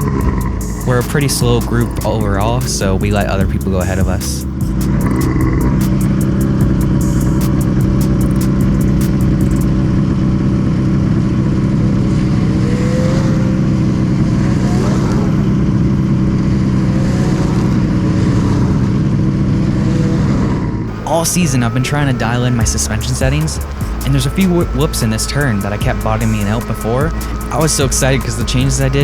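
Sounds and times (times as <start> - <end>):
rapid sharp clicking: 0.0 - 9.8, 20.9 - 29.0
snowmobile engine running: 0.0 - 29.0.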